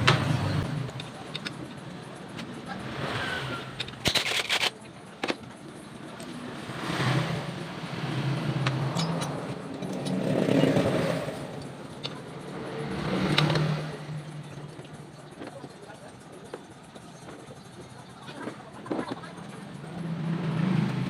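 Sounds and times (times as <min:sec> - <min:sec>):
motor vehicles passing: 0:00.0 - 0:04.1, 0:04.7 - 0:21.0
hand tools clicking: 0:00.9 - 0:03.0, 0:03.6 - 0:06.4, 0:08.6 - 0:15.8.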